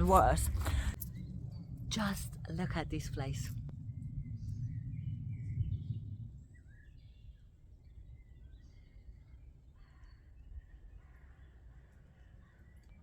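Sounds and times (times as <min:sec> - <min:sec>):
low rumble: 0:00.0 - 0:09.7
small birds chirping: 0:03.0 - 0:13.0.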